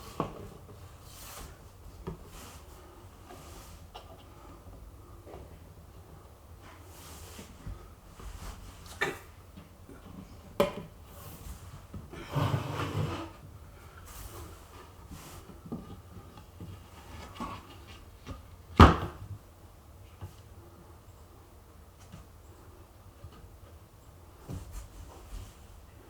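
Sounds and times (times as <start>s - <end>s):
scraping slide: 12.3s - 13.4s
knocks on cabinetry: 18.8s - 19.2s.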